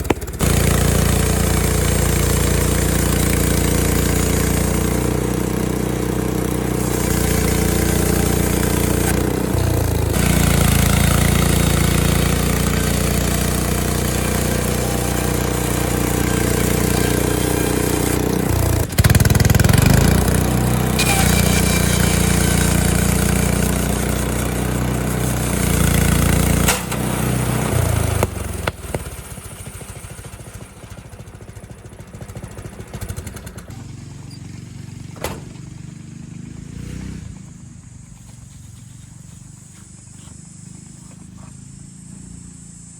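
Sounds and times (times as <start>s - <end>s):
sharp crack: 0.0s - 1.0s, 26.6s - 27.1s, 28.0s - 29.4s
saw blade cutting log: 0.0s - 29.3s
small gasoline engine running: 0.0s - 42.9s.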